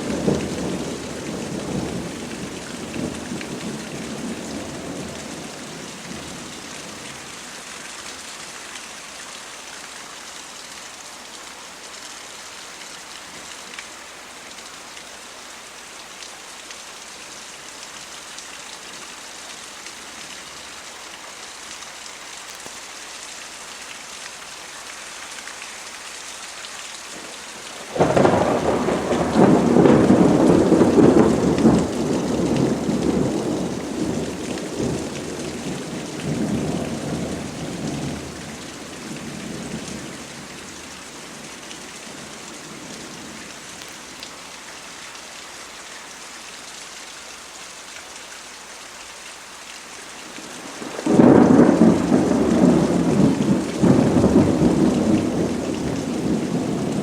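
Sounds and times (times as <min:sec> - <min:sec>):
rain hissing down: 0:00.0 - 0:57.0
thunder rumbling: 0:27.8 - 0:40.2, 0:50.6 - 0:57.0
loud peal of thunder: 0:27.9 - 0:38.4, 0:50.8 - 0:57.0.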